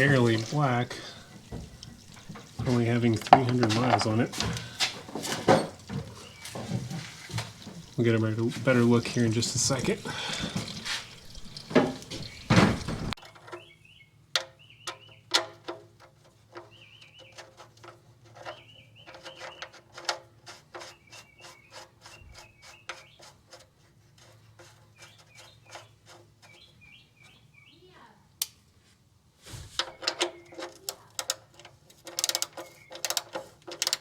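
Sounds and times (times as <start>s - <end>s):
oil pouring into pan: 0.0s - 13.2s
small birds chirping: 0.0s - 15.5s, 16.5s - 23.6s, 24.2s - 28.3s, 29.5s - 34.0s.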